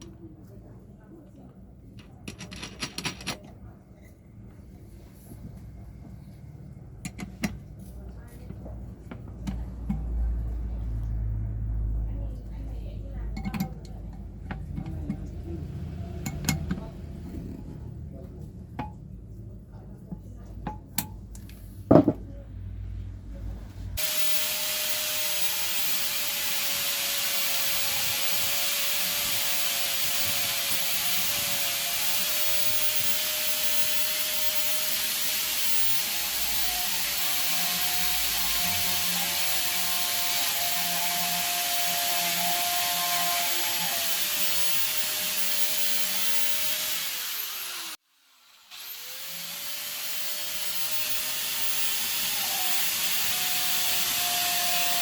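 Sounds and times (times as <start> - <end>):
handling clicks and knocks: 2.0 - 3.5
angle grinder running: 24.0 - 55.0.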